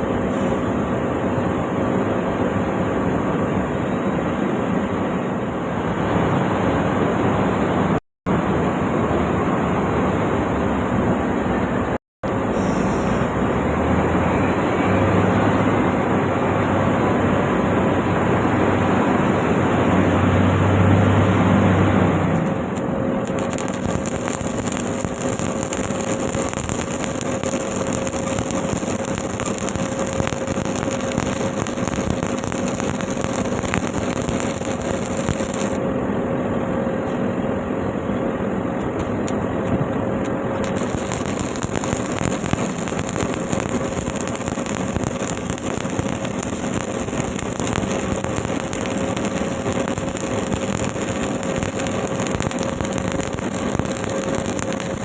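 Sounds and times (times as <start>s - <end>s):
welding arc crackling: 12.2s - 13.5s, 22.3s - 35.8s, 40.5s - 55.0s.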